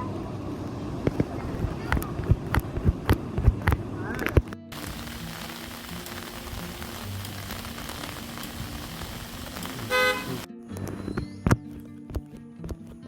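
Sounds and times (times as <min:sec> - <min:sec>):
faint background music: 0:00.0 - 0:13.0
rain hissing: 0:04.7 - 0:10.5
rushing floodwater: 0:04.7 - 0:10.5
vehicle horn toot: 0:09.8 - 0:10.5.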